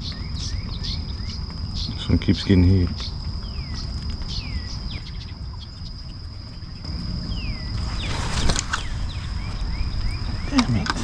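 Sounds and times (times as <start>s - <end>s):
insects shrilling: 0.0s - 11.0s
low rumbling background: 3.0s - 11.0s.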